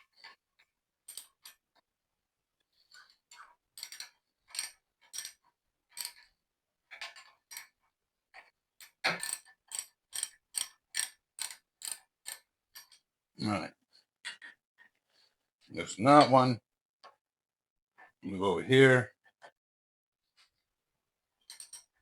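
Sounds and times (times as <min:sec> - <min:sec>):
hand tools clicking metallically: 0:09.1 - 0:13.0.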